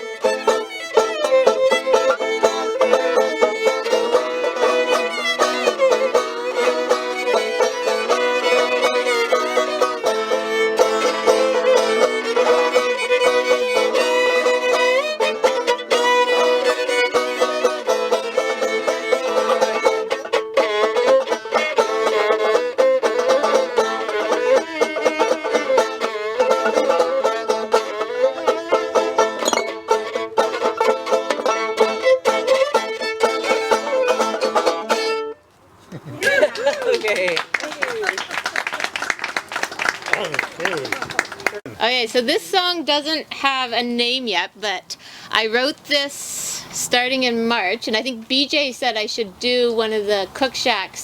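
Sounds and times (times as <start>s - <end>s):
banjo: 0.0s - 35.4s
fiddle: 0.0s - 51.0s.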